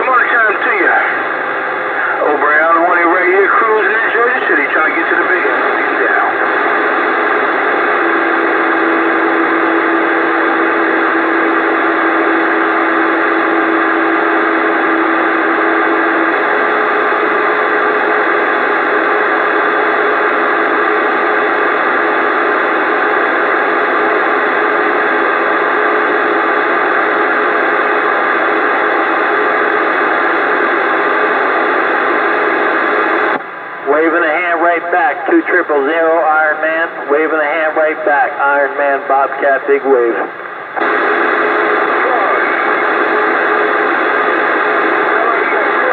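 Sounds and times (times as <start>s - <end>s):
radio static hiss: 0.0s - 45.9s.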